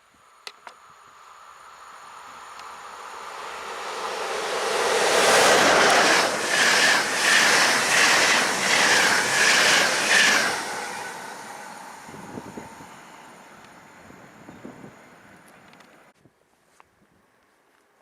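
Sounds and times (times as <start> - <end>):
train rumbling past: 1.1 - 15.5
train wheels beating over rail joints: 2.6 - 13.0.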